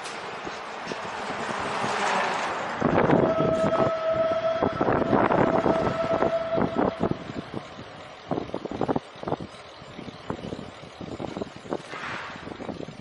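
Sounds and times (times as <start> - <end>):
steady squeal: 2.8 - 9.0
bicycle rattling over uneven ground: 7.5 - 13.0.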